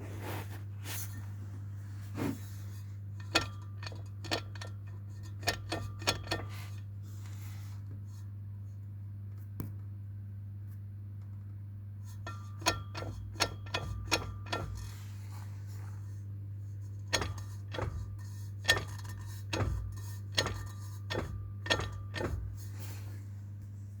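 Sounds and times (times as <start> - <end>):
steady low hum: 0.0 - 24.0
driveshaft metallic knocking: 3.2 - 6.8, 12.3 - 15.0, 17.0 - 22.7.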